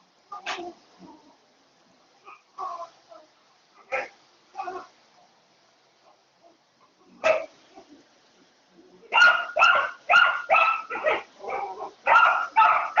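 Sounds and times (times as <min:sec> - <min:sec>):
dog barking rapidly: 0:09.1 - 0:11.3, 0:12.0 - 0:13.0.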